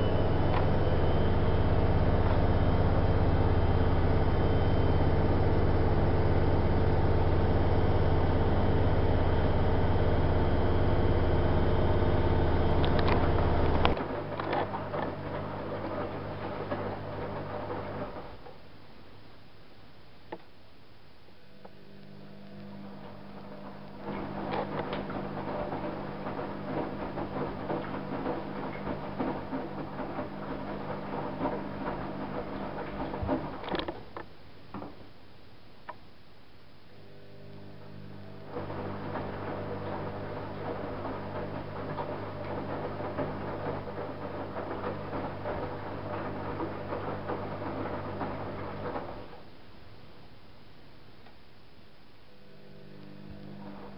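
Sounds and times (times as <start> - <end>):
washing machine motor humming: 0.0 - 18.5, 21.5 - 34.2, 36.9 - 49.6, 52.3 - 53.9
laundry tumbling and sloshing: 23.1 - 34.2, 38.5 - 49.4.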